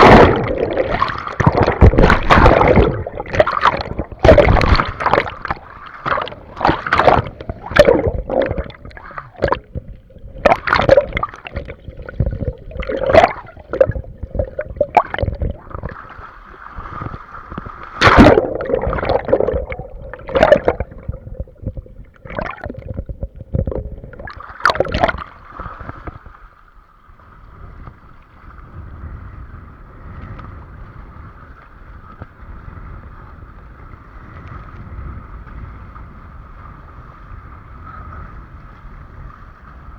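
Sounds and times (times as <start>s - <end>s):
water splashing against a board: 0.0s - 26.5s
rush of water and wind: 0.0s - 39.9s.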